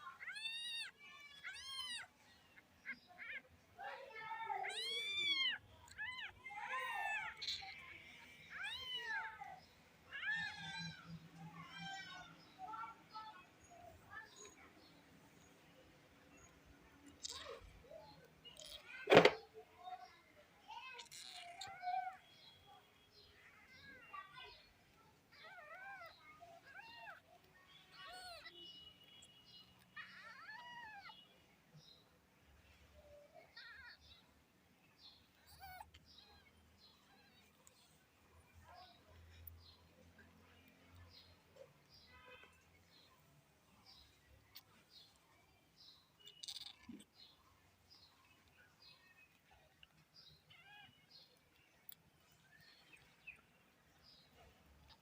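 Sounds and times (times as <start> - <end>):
cat meowing: 0.2 - 2.1, 4.6 - 7.8, 35.5 - 36.4.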